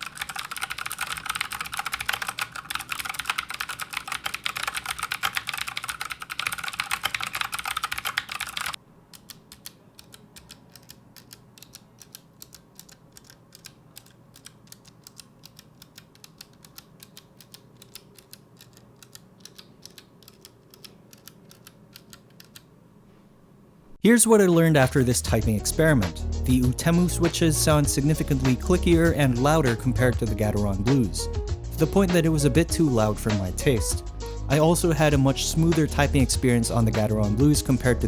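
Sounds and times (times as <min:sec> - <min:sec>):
fast clicky mechanical keyboard typing: 0:00.0 - 0:22.7.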